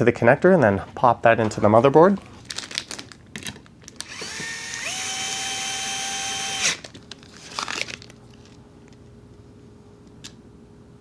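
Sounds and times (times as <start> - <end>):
electric screwdriver motor whining: 4.0 - 6.8.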